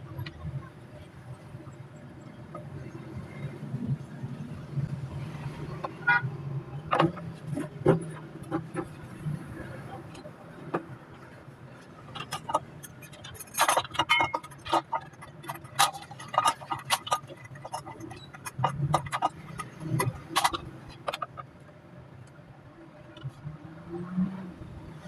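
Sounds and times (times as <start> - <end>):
clicks and taps on small hard parts: 12.1 - 21.5.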